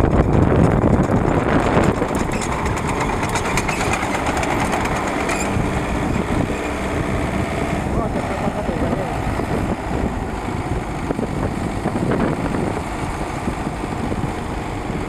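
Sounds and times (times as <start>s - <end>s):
continuous rattle: 0.0s - 9.3s
tractor engine under load: 0.0s - 15.0s.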